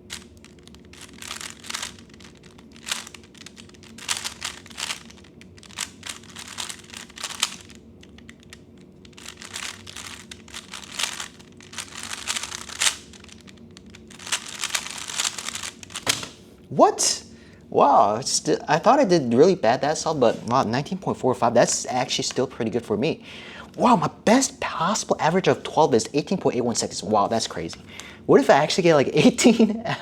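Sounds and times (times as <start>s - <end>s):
speed cube plastic clicking: 0.0s - 16.4s.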